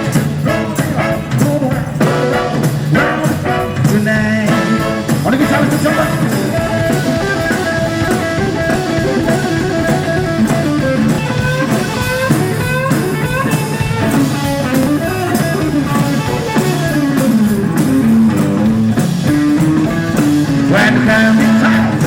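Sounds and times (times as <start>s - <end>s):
drum kit and bass: 0.0s - 22.0s
electric guitar solo: 4.5s - 22.0s.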